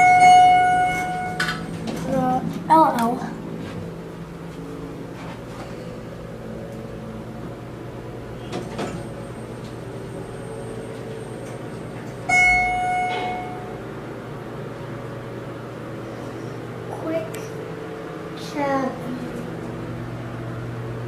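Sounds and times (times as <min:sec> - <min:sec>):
electronic chime tone: 0:00.0 - 0:01.4, 0:12.2 - 0:13.8
elevator machinery hum: 0:00.0 - 0:21.0.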